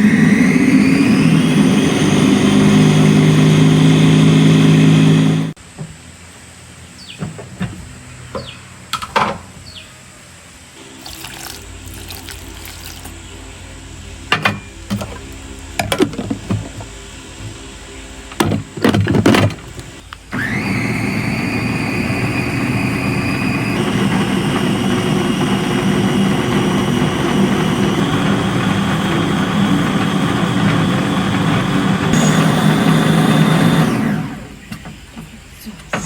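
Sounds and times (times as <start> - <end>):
small motor whining: 0.0 - 5.6, 20.3 - 34.7.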